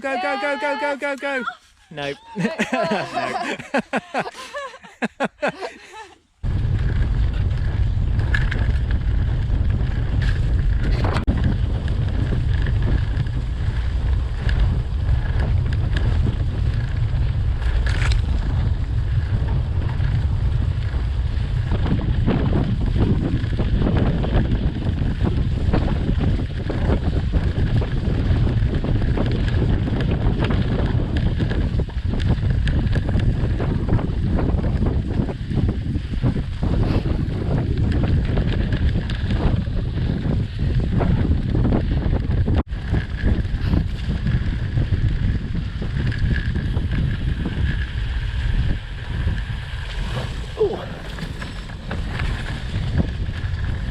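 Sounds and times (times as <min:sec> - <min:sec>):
wind rumbling on microphone: 0:02.4 - 0:53.9
bike rattles and clicks: 0:02.6 - 0:53.9.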